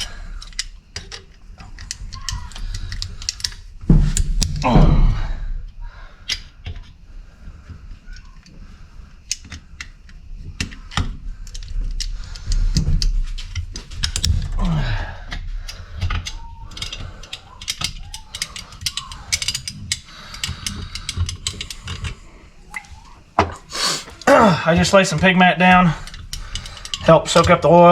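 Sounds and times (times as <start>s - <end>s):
hand tools clicking on metal: 0.0s - 4.6s, 9.2s - 27.9s
heavy thumps: 3.8s - 5.8s.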